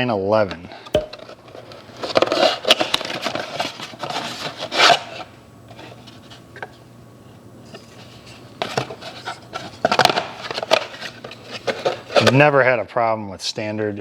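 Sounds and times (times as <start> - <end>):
packaging rubbing and rustling: 1.2 - 6.4, 7.7 - 12.4.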